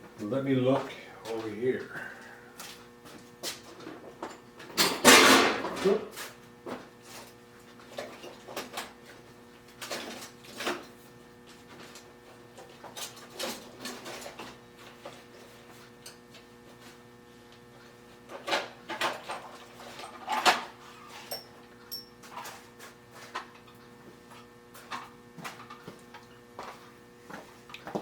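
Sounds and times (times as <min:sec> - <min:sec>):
metal tools clattering in drawer: 0:18.4 - 0:22.6.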